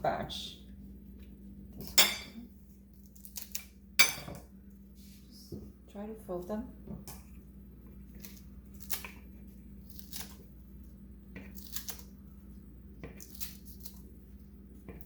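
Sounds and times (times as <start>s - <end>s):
scissors snipping leaves: 3.0s - 3.7s, 8.2s - 9.2s, 9.9s - 10.4s, 11.4s - 12.1s, 13.1s - 14.0s.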